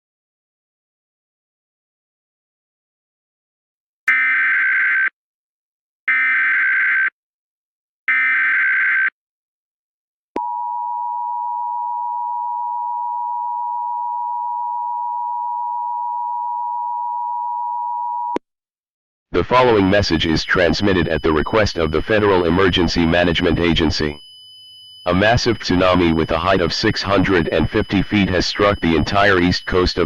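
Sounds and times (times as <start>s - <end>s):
warbling data tones: 19.5s - 30.0s
two-tone attention signal: 19.6s - 30.0s.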